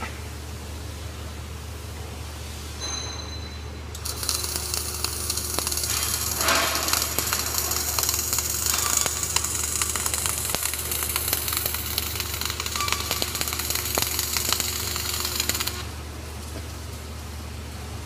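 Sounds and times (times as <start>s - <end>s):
welding arc crackling hiss: 3.9s - 17.6s
welding machine hum: 3.9s - 18.0s.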